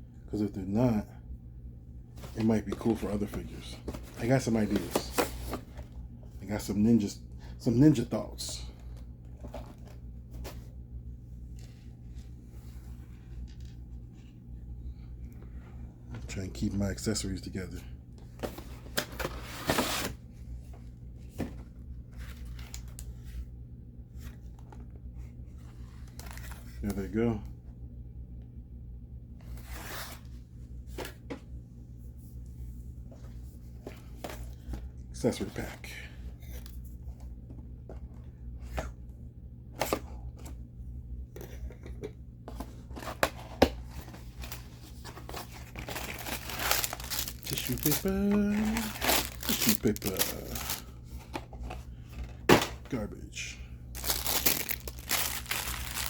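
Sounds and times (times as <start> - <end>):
packaging rustling: 43.9 - 51.8, 53.9 - 56.0.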